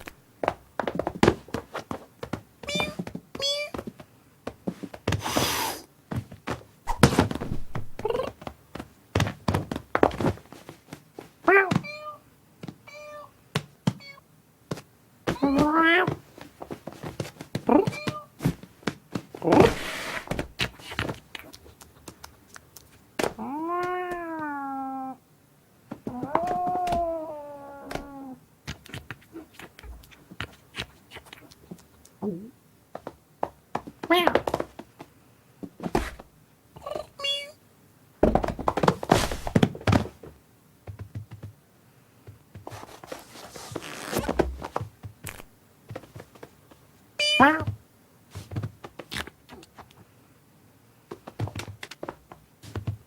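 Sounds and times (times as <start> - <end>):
person imitating cat meow: 2.7 - 3.8, 8.0 - 8.4, 11.5 - 12.2, 15.4 - 16.2, 17.7 - 18.3, 23.4 - 25.2, 26.1 - 28.4, 32.2 - 32.6, 34.1 - 34.4, 47.2 - 47.7
cat cry falling in pitch: 23.4 - 25.2, 26.1 - 28.4
soft scrapes and taps: 42.2 - 46.6.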